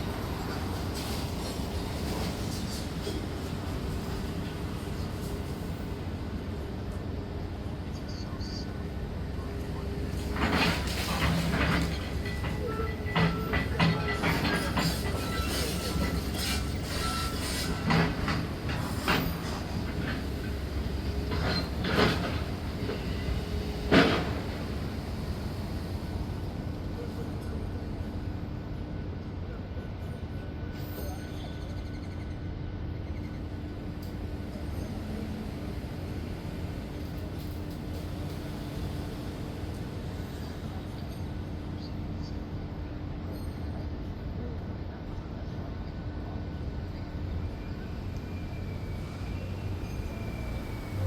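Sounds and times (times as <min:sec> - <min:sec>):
demolition machinery engine rumble: 0:00.0 - 0:31.0.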